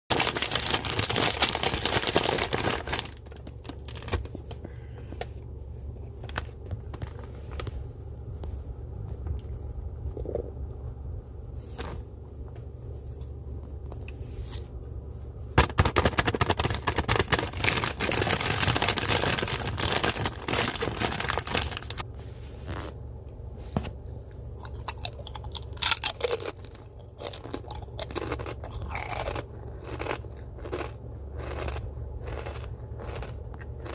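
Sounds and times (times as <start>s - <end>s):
crunchy snack being chewed: 0.1s - 4.3s, 16.7s - 22.0s, 24.6s - 33.9s
steady low hum: 0.1s - 33.9s.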